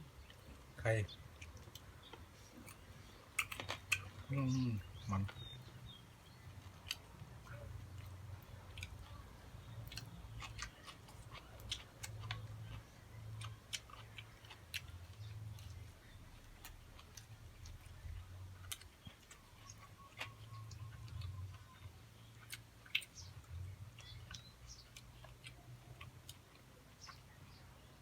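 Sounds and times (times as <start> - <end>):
person chewing: 1.3 - 4.2, 4.9 - 27.4.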